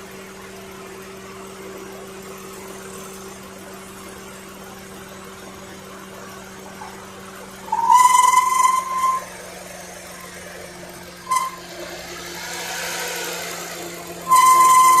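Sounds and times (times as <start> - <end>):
vehicle squealing: 6.7 - 15.0.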